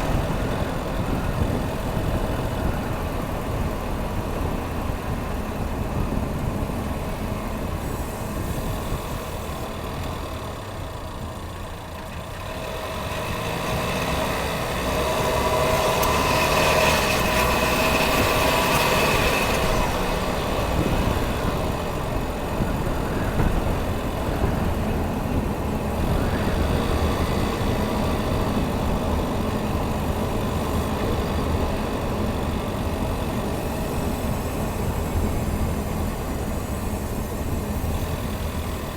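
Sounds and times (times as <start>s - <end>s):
car engine low rumble: 0.0s - 38.9s
whine of steady tones: 17.1s - 38.9s.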